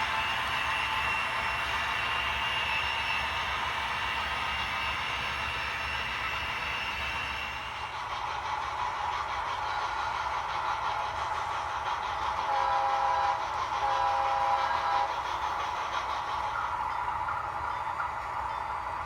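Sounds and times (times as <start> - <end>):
model locomotives running: 0.0 - 19.0
model train horn blasts: 12.5 - 15.2.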